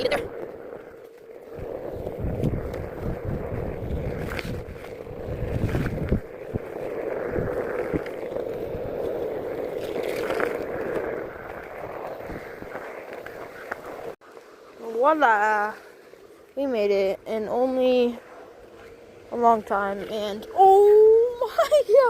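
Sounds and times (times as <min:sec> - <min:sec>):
wind buffeting microphone: 0:00.0 - 0:14.2.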